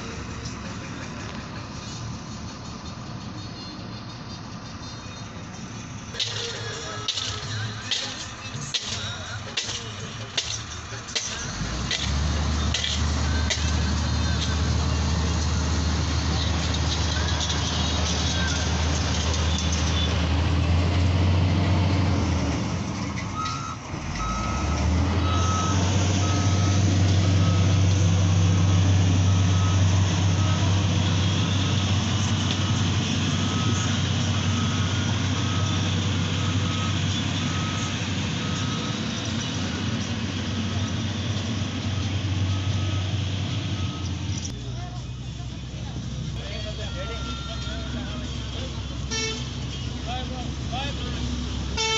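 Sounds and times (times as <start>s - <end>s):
heavy vehicle engine running: 0.0s - 51.9s
reversing alarm beeping: 23.4s - 44.2s, 46.8s - 48.3s.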